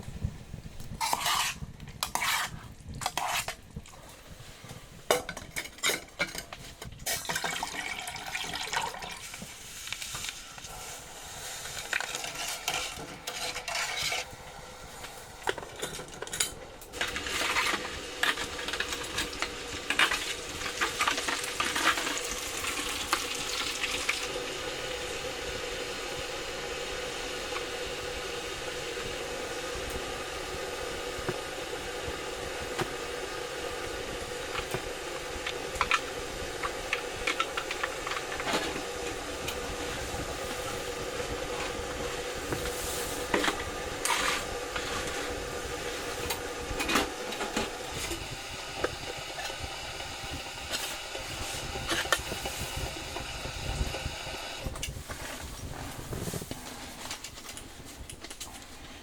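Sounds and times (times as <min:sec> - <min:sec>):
metal utensils scraping cookware: 0:01.0 - 0:03.6, 0:11.8 - 0:14.3
food frying sizzle: 0:07.1 - 0:15.6, 0:16.8 - 0:57.2.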